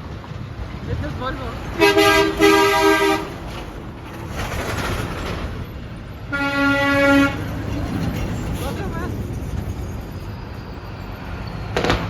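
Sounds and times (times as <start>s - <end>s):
traffic noise: 0.0s - 12.0s
truck air horn honking: 1.8s - 3.5s, 6.3s - 7.6s.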